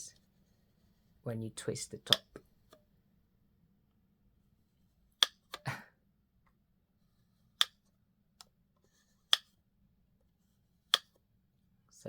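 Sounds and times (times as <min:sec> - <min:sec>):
plastic twist-top clicks: 0:02.1 - 0:02.4.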